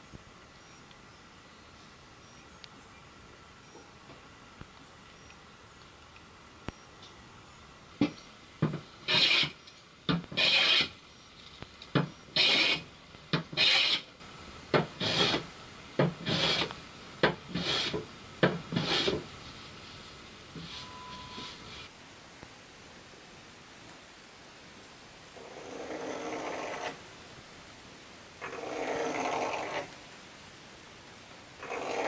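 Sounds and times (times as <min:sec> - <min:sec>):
hand tool scraping wood: 0:08.6 - 0:11.0, 0:12.0 - 0:14.1, 0:14.8 - 0:19.3, 0:25.6 - 0:27.0
tool knocking on wood: 0:14.7 - 0:14.9, 0:18.4 - 0:19.2.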